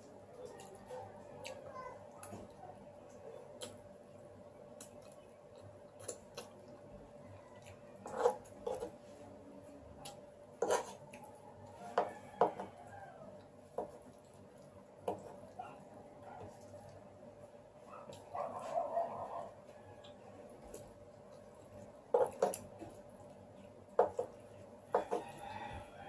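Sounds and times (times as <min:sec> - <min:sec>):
cutlery scraping a plate: 0:08.0 - 0:08.9, 0:10.6 - 0:11.0.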